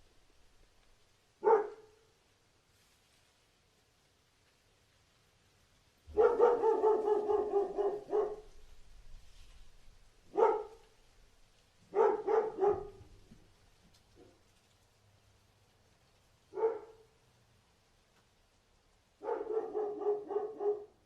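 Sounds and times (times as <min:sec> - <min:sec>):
dog barking: 0:01.4 - 0:02.1, 0:06.1 - 0:08.6, 0:10.3 - 0:11.0, 0:11.9 - 0:13.2, 0:16.5 - 0:17.2, 0:19.2 - 0:21.0.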